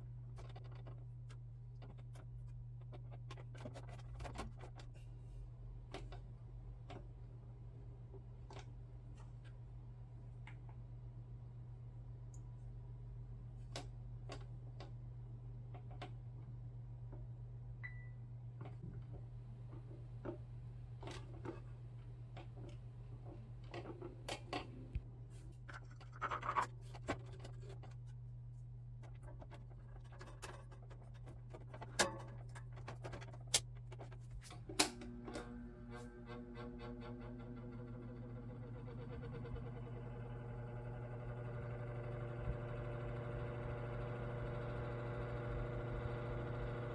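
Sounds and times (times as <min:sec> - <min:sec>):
plastic fan parts clicking and scraping: 0:00.3 - 0:05.2, 0:05.9 - 0:07.2, 0:18.6 - 0:28.3, 0:28.9 - 0:35.6
low hum: 0:08.9 - 0:46.9.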